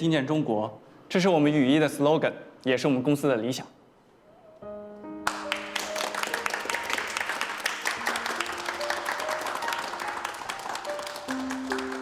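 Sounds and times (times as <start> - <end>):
soft background music: 4.6 - 12.0
people applauding: 5.2 - 12.0.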